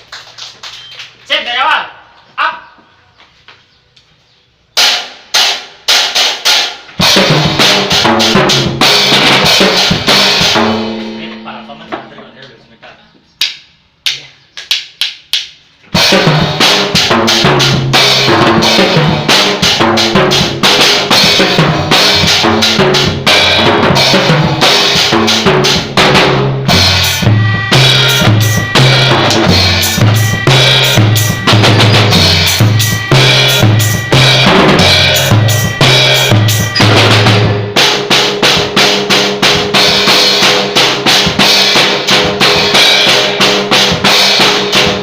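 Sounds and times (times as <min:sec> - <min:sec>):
drum kit beat: 0:04.8 - 0:12.2, 0:13.4 - 0:45.0
bass line: 0:16.1 - 0:37.8.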